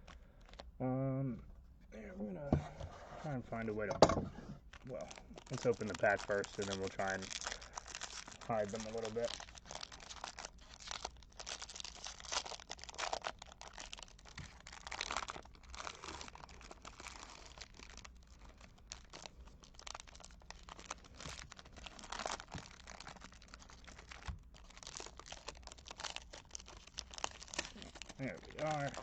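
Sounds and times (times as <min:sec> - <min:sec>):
card pack wrapper crinkling: 0:00.0 - 0:00.7, 0:04.6 - 0:29.0.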